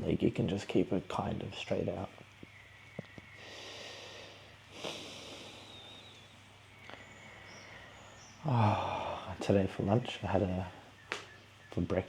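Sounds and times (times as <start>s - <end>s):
faint ticks: 2.2s - 3.4s
man breathing through the nose: 3.3s - 6.2s, 6.8s - 9.4s.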